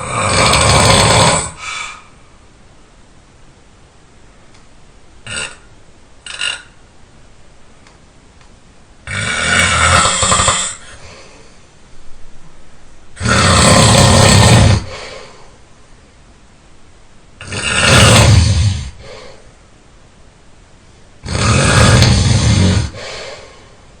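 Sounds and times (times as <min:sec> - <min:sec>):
person snoring loudly: 0:00.0 - 0:02.1, 0:09.0 - 0:11.2, 0:13.2 - 0:15.3, 0:17.4 - 0:19.4, 0:21.2 - 0:23.6
quiet breathing: 0:01.4 - 0:02.5, 0:10.7 - 0:11.8, 0:14.8 - 0:15.7, 0:18.6 - 0:19.7, 0:22.6 - 0:24.0.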